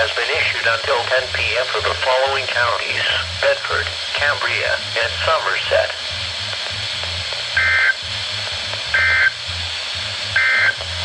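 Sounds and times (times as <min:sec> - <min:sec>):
radio hiss: 0:00.0 - 0:11.0
two-tone digital data bursts: 0:07.6 - 0:08.0, 0:08.9 - 0:09.4, 0:10.4 - 0:10.8.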